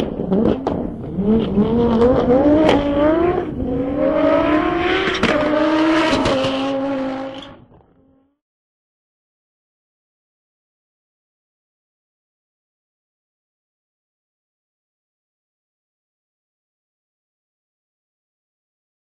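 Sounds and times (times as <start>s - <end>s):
car engine accelerating: 0.0s - 8.4s.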